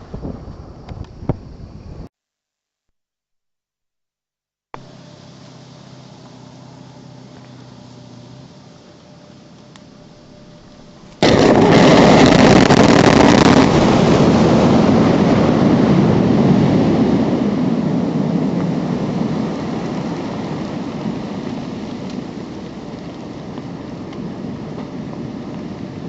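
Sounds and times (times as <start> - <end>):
mine blast bang and rumble: 11.2 - 19.4.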